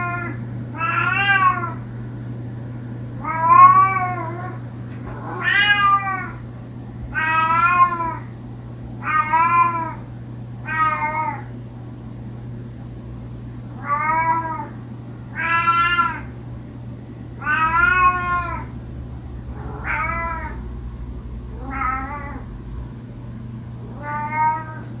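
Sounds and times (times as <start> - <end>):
cat meowing: 0.0 - 1.8, 15.4 - 16.3, 17.4 - 18.8, 19.5 - 20.7, 21.5 - 22.5, 23.9 - 24.9
low hum: 16.3 - 25.0.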